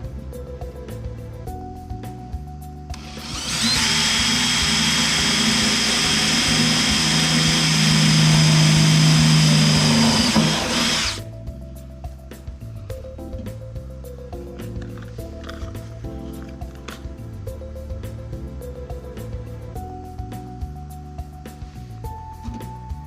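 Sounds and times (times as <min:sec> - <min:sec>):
background music: 0:00.0 - 0:23.0
electric drill whining: 0:02.9 - 0:11.2.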